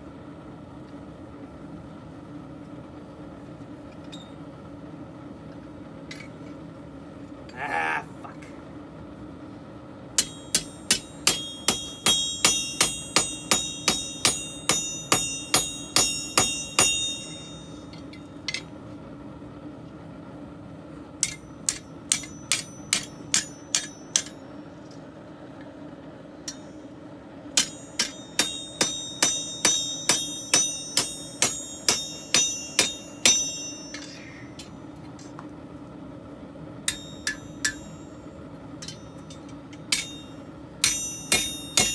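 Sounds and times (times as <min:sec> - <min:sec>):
hammer striking blade on anvil: 0:10.2 - 0:18.7, 0:21.2 - 0:24.5, 0:26.5 - 0:26.9, 0:27.6 - 0:35.3, 0:36.9 - 0:41.9.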